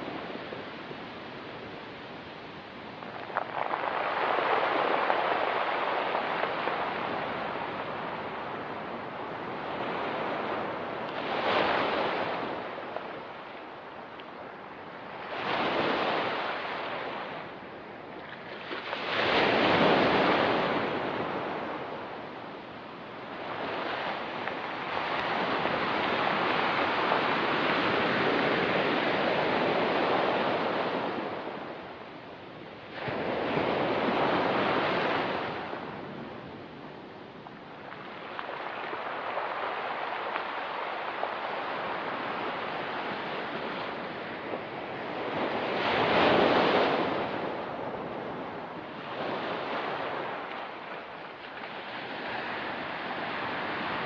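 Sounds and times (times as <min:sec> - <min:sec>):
waves breaking on rocky beach: 0:00.0 - 0:17.6, 0:36.8 - 0:54.0.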